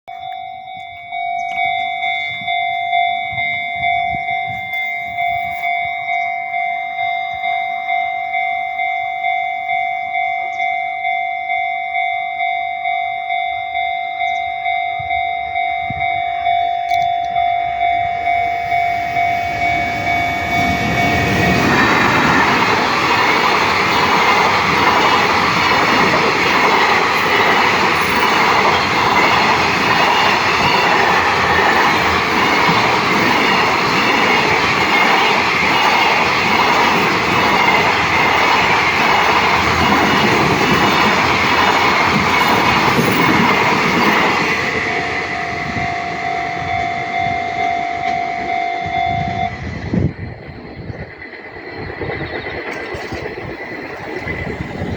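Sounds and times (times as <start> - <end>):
steady tone: 15.4 - 54.9
train wheels rumbling and clattering: 15.9 - 54.9.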